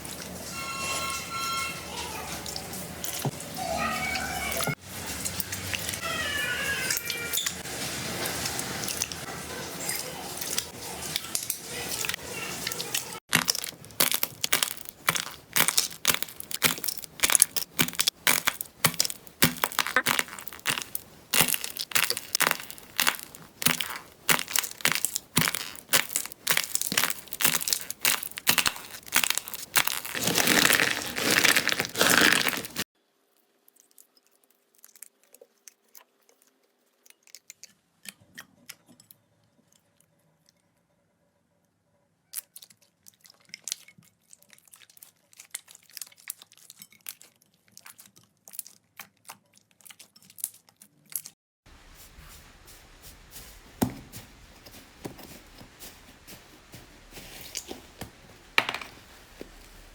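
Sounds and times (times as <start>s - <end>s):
slime crackling and popping: 13.3s - 32.9s.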